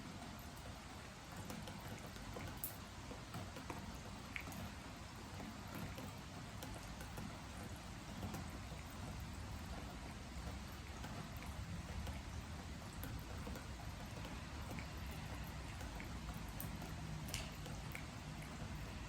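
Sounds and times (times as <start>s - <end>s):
raindrops ticking on wooden boards: 0.0s - 19.0s.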